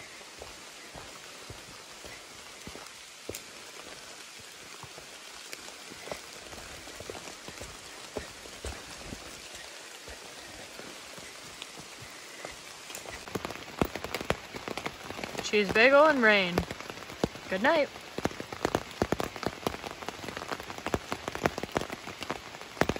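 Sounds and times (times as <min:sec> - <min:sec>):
rain hissing: 0:00.0 - 0:22.9
raindrop taps: 0:04.8 - 0:22.9.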